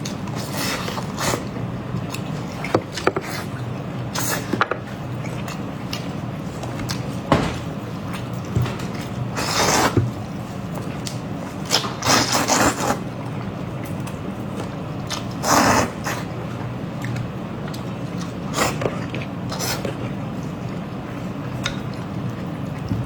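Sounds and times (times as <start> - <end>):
eating noises: 7.9 - 23.0
steady low hum: 13.1 - 23.0.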